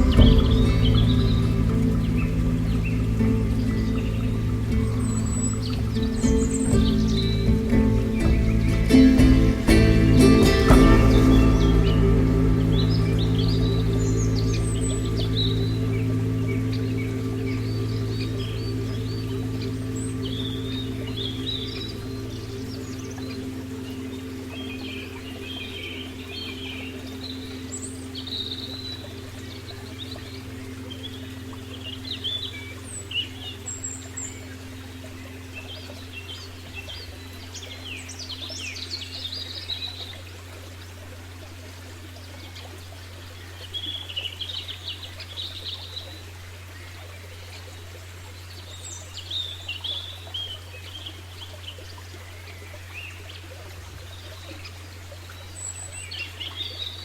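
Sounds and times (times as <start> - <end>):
held low tones: 0.0 - 41.1
soft rushing background: 0.0 - 45.8
birds chirping: 0.0 - 57.0
low hum: 0.0 - 57.0.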